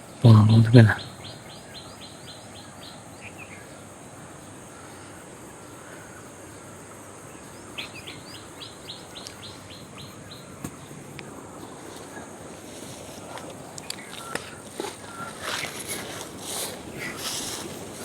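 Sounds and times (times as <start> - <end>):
bird singing rapid notes: 0.2 - 3.7, 7.4 - 12.2.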